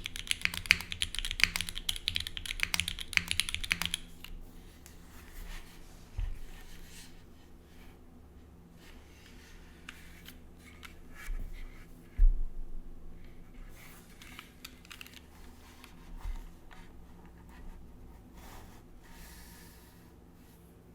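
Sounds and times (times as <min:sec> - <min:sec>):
mechanical keyboard keystrokes: 0:00.0 - 0:04.3, 0:14.2 - 0:15.3.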